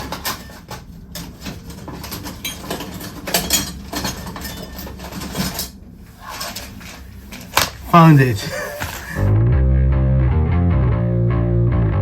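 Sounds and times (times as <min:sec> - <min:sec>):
metal objects clinking: 0:00.0 - 0:06.8.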